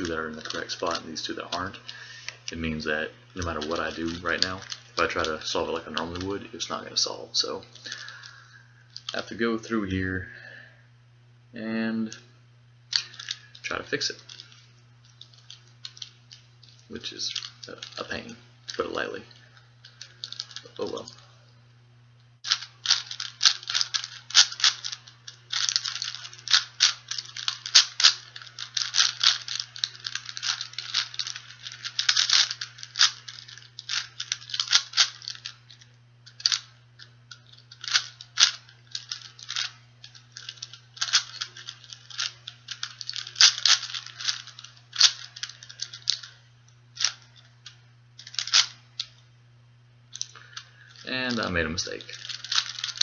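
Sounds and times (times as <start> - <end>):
puzzle cube clicking and rattling: 0.0 - 9.3, 12.9 - 21.2, 22.4 - 46.4, 47.0 - 49.2, 50.1 - 53.0
steady low hum: 0.0 - 53.0.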